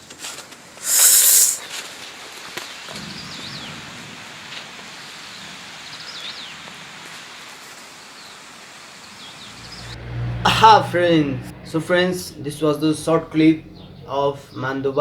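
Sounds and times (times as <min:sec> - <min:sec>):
rain hissing: 0:00.8 - 0:01.7.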